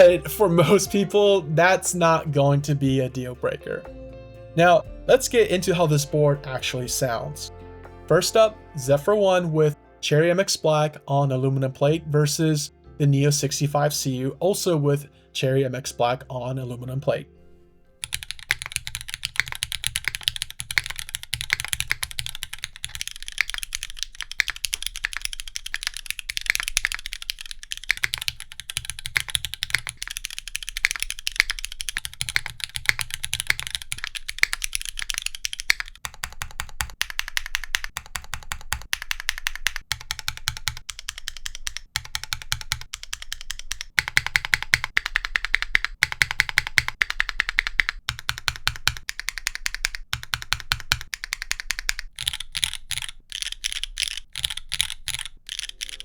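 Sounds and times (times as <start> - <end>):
typing on mechanical keyboard: 18.0 - 56.0.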